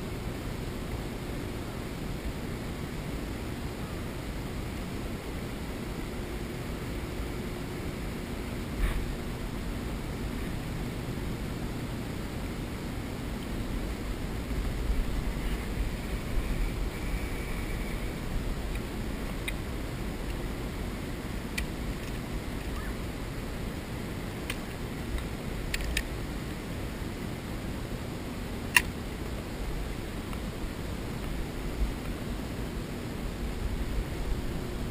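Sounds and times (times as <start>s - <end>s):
wind: 0.0s - 34.9s.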